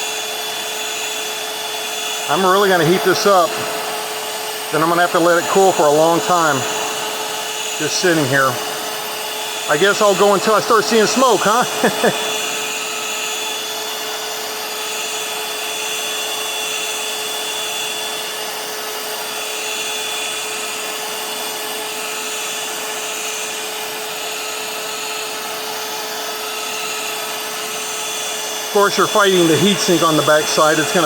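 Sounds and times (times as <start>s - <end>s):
heat gun fan rush: 0.0s - 31.0s.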